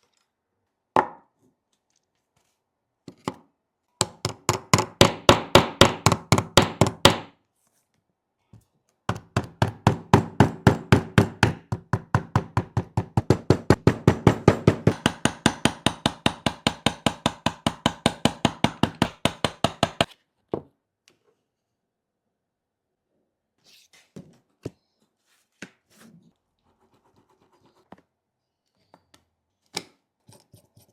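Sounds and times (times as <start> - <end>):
rapid tapping knocks: 9.5 - 20.1.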